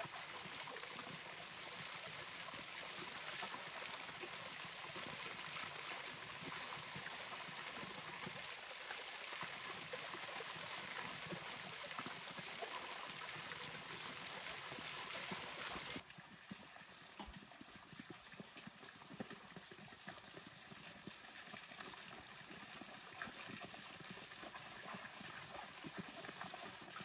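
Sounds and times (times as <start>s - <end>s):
stream flowing: 0.0s - 16.1s.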